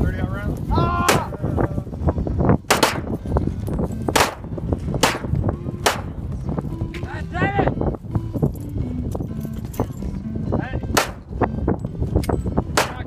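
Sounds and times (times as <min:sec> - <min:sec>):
gunshots with echo: 0:02.7 - 0:03.2, 0:04.1 - 0:06.2, 0:10.9 - 0:11.3, 0:12.7 - 0:13.0.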